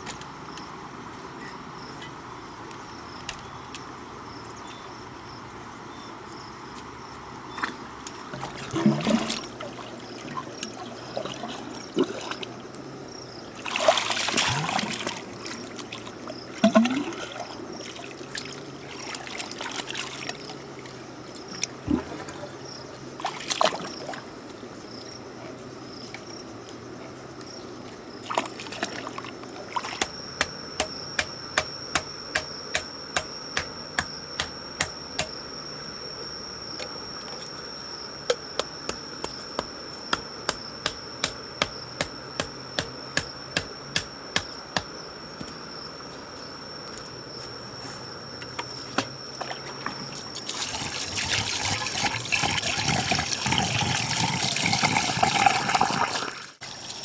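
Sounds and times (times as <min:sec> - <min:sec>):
water trickling and splashing: 0:07.4 - 0:25.1, 0:26.0 - 0:32.4, 0:49.3 - 0:57.0
sharp knocks: 0:30.4 - 0:35.4, 0:38.3 - 0:45.5.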